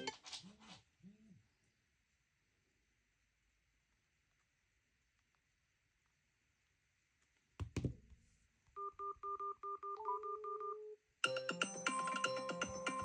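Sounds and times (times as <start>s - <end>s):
phone ringtone melody: 11.2s - 13.0s.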